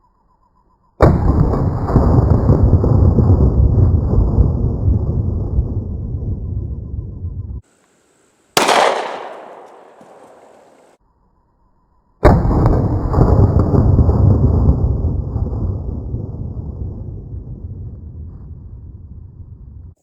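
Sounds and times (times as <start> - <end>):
pistol shot: 8.6 - 10.9.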